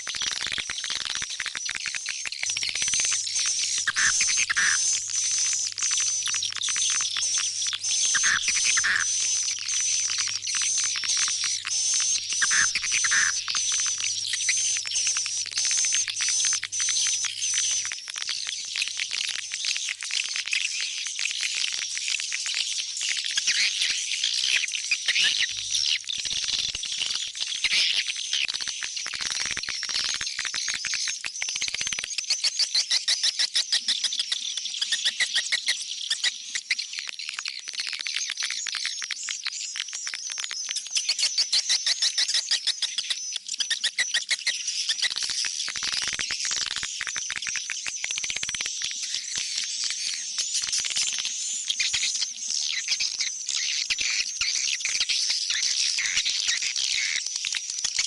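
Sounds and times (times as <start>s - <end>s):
swiftlet chirps and twittering: 2.3s - 17.9s.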